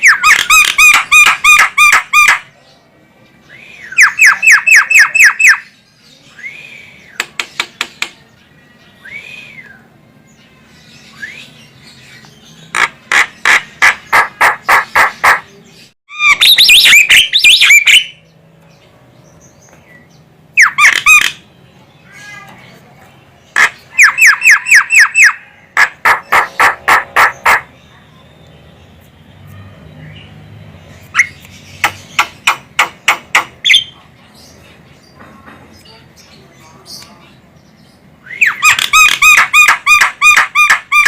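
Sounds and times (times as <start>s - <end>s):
bird calling repeated notes: 0.0s - 2.4s, 3.9s - 5.7s, 16.1s - 18.2s, 20.6s - 21.5s, 23.6s - 27.8s
bird whistled notes: 38.2s - 40.0s.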